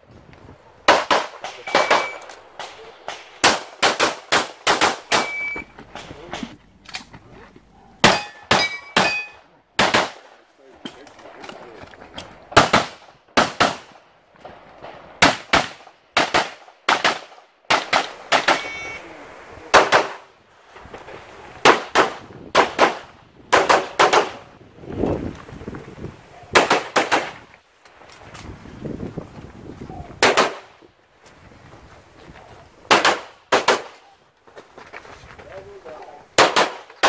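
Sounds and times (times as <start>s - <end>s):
rapid pistol shots: 0.9s - 5.4s, 9.8s - 10.3s, 12.6s - 14.0s, 15.2s - 18.7s, 19.7s - 20.2s, 21.6s - 24.4s, 26.6s - 27.4s, 30.2s - 30.7s, 32.9s - 33.9s, 36.4s - 37.0s.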